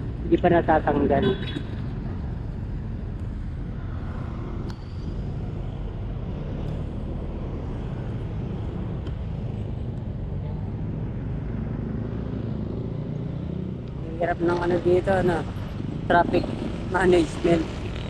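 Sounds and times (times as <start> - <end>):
road traffic rumble: 0.0 - 18.0.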